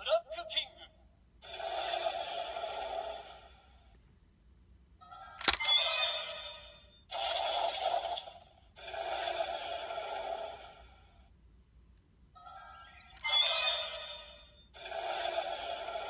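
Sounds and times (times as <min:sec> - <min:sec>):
toy mechanism click: 0:05.1 - 0:06.7, 0:12.4 - 0:14.4
toy electronic sound effects: 0:05.1 - 0:08.2, 0:12.4 - 0:16.0.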